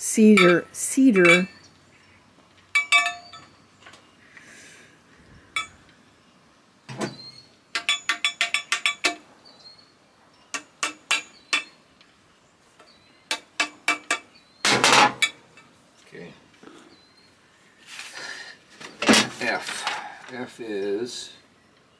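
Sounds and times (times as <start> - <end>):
metal parts clinking: 2.8 - 3.5, 7.8 - 9.2, 13.3 - 15.7.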